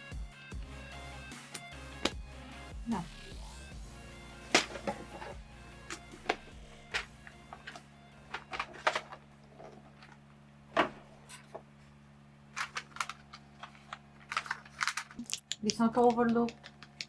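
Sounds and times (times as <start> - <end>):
keycaps clicking on keyboard: 14.4 - 17.0.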